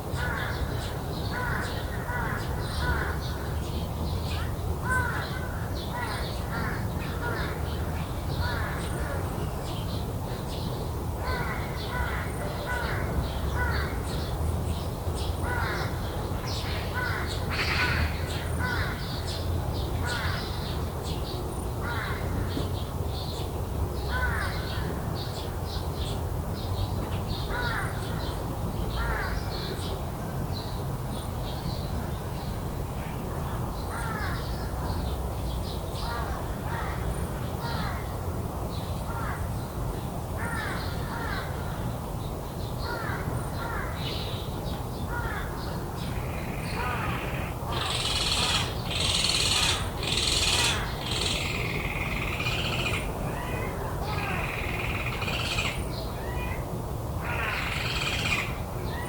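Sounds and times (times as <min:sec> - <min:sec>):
crows cawing: 0:00.2 - 0:03.2, 0:04.8 - 0:07.6, 0:11.2 - 0:14.0, 0:16.9 - 0:19.1, 0:24.1 - 0:24.8, 0:27.5 - 0:28.2, 0:40.4 - 0:41.6, 0:42.9 - 0:44.1, 0:45.1 - 0:45.6, 0:46.2 - 0:55.8, 0:57.2 - 0:58.6.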